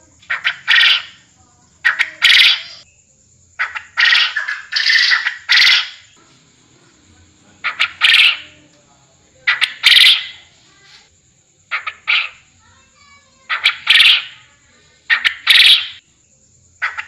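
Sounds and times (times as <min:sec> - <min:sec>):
harsh scratchy quail calls: 0:00.2 - 0:01.2, 0:01.8 - 0:02.9, 0:03.6 - 0:06.4, 0:07.6 - 0:08.6, 0:09.4 - 0:11.1, 0:11.7 - 0:12.5, 0:13.4 - 0:14.5, 0:15.1 - 0:16.0, 0:16.8 - 0:17.0.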